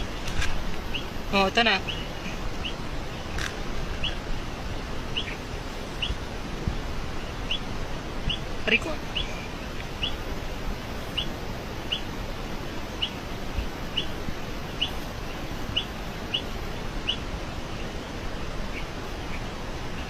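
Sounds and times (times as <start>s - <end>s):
bird chirping: 0.0s - 4.3s, 5.0s - 6.3s, 7.1s - 20.0s
outdoor background noise: 0.0s - 20.0s.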